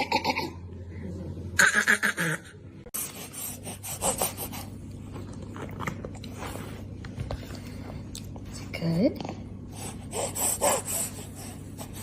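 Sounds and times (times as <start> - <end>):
chewing crunchy food: 5.0 - 8.4.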